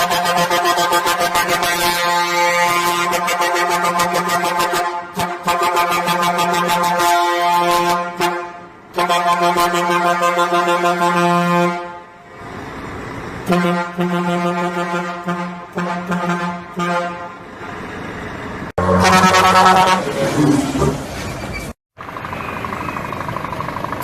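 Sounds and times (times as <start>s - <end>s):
vehicle horn blasts: 0.0s - 12.1s, 13.5s - 17.4s, 18.8s - 20.1s.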